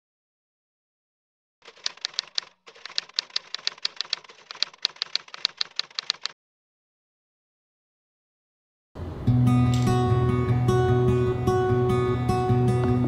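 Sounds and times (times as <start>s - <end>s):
keyboard typing clicks: 1.6s - 6.4s.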